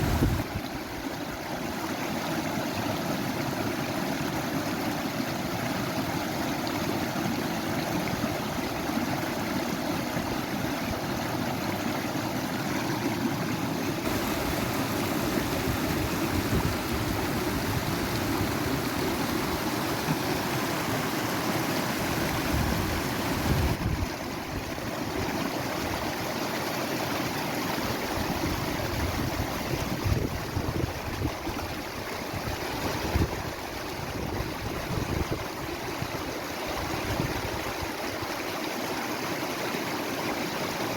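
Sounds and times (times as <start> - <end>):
stream water rushing: 0.0 - 40.9.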